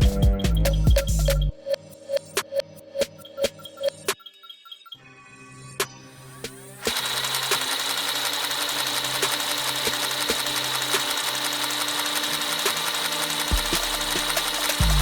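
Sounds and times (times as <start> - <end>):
toy gun mechanical rattle: 6.8 - 15.0.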